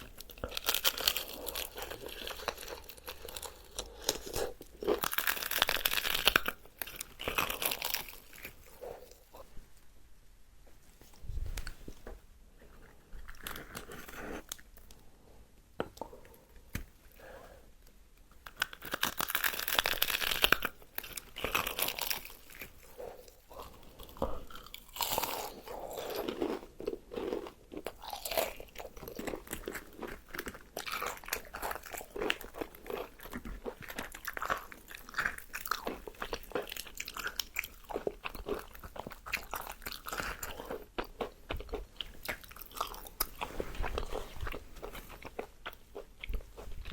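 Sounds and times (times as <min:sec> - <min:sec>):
crunchy chewing of fried chicken: 0:00.0 - 0:09.5, 0:18.5 - 0:46.9.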